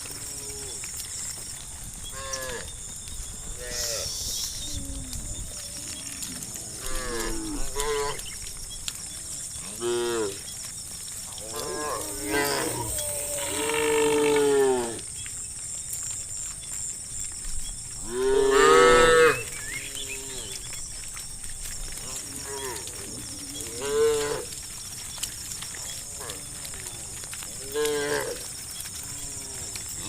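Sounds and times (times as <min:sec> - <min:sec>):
cattle mooing: 0:05.6 - 0:08.3, 0:11.4 - 0:15.0.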